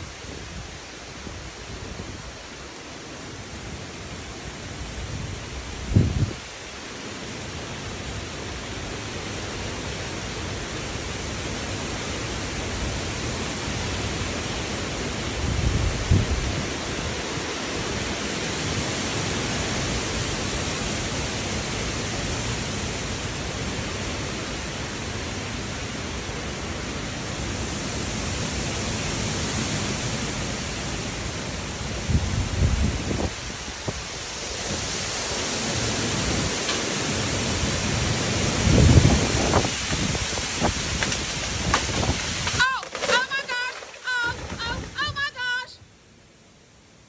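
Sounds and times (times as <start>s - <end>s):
strong winds rushing: 4.8s - 6.5s, 31.8s - 45.6s.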